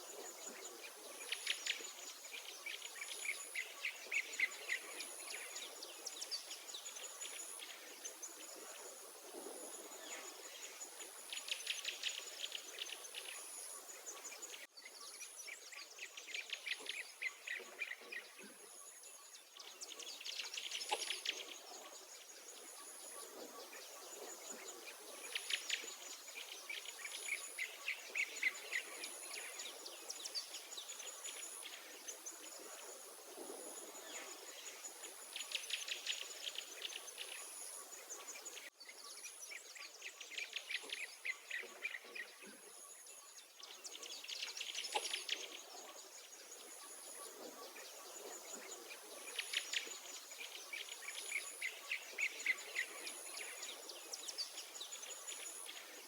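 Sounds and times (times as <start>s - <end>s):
songbirds singing: 0.0s - 56.0s.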